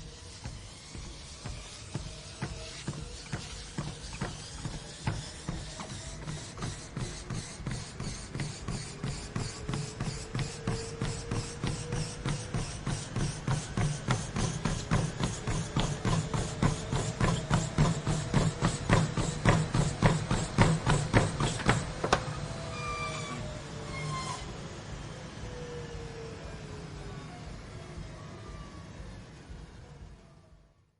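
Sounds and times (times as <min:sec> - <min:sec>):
footfalls on treadmill belt: 0:00.0 - 0:22.4
treadmill motor hum: 0:00.0 - 0:30.9.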